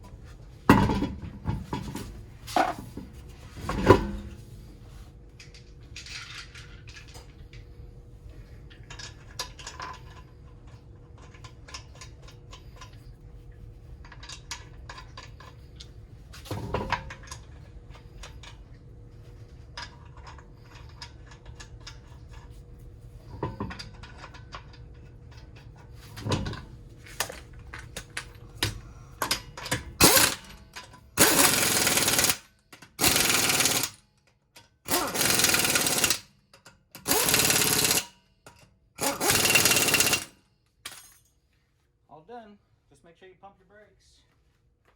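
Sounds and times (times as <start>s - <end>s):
clinks of tools and metal parts: 23.3s - 41.4s
impact wrench bursts: 30.0s - 30.6s, 31.2s - 34.0s, 34.9s - 36.3s, 37.0s - 38.1s, 39.0s - 40.4s.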